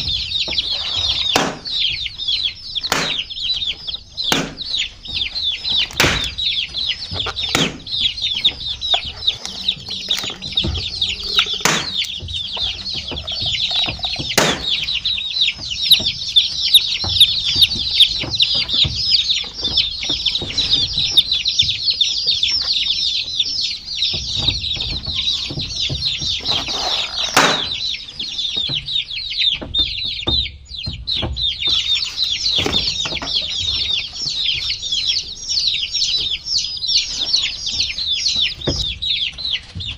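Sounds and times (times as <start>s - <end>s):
sharp knocks: 0.0s - 1.9s, 2.8s - 3.5s, 4.2s - 21.8s, 24.0s - 27.9s
baby chicks peeping: 0.0s - 39.9s.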